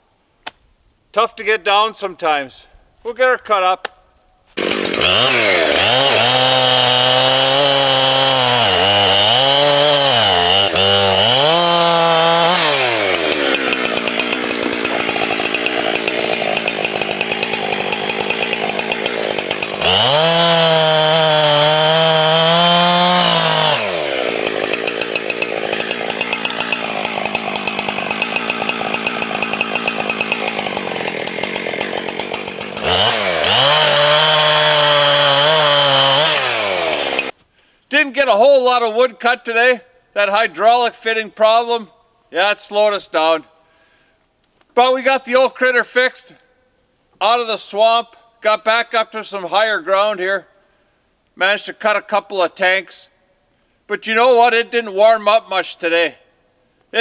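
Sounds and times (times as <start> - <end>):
chainsaw cutting wood: 4.5 - 37.4.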